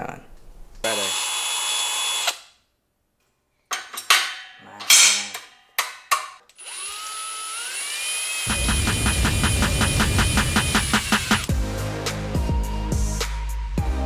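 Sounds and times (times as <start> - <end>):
power drill tapping threads: 5.8 - 11.5.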